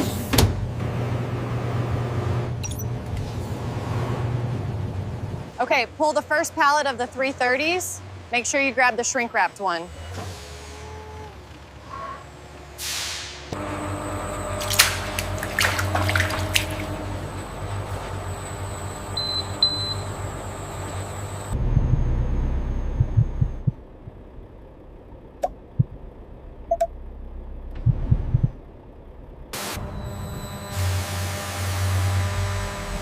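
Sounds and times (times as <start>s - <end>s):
factory machinery hum: 0.0s - 33.0s
low rumble: 21.6s - 29.6s.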